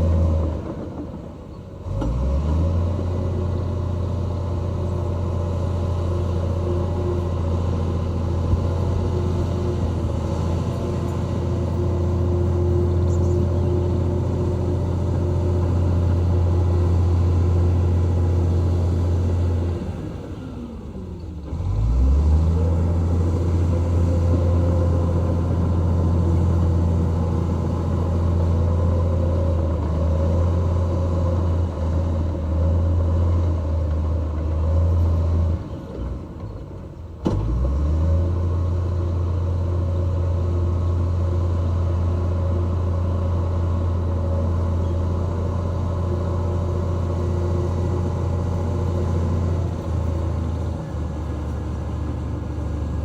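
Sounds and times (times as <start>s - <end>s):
diesel engine droning: 0.0s - 53.0s.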